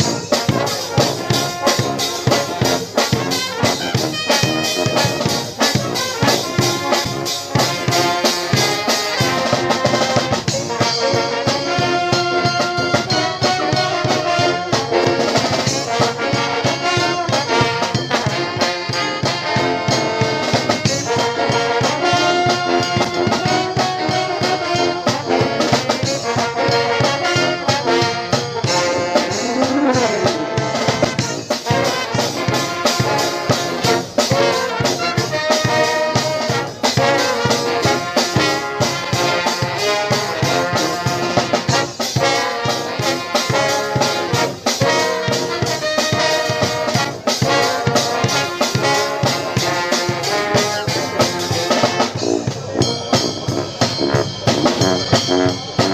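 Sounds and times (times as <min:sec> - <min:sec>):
steady drum beat: 0:00.0 - 0:55.9
trombones and trumpets playing: 0:00.0 - 0:55.9.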